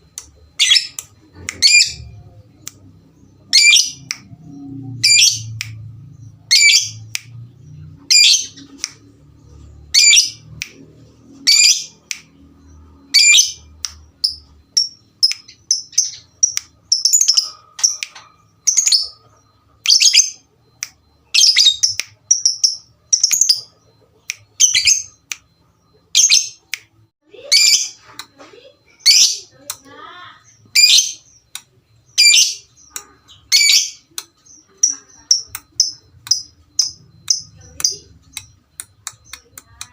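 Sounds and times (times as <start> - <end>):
lovebirds squeaking and chirping: 0.2 - 10.7, 11.3 - 39.9.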